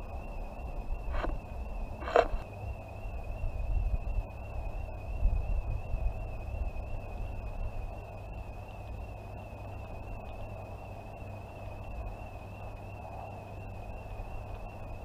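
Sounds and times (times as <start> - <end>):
distant alarm sounder tone: 0.0 - 10.1.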